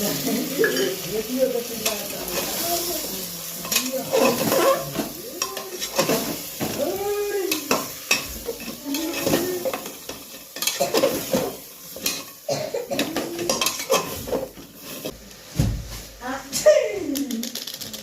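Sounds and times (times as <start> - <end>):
meat sizzling: 0.0 - 15.5
metal spoon scraping cooking pot: 3.6 - 6.6, 7.6 - 12.4, 13.0 - 15.1.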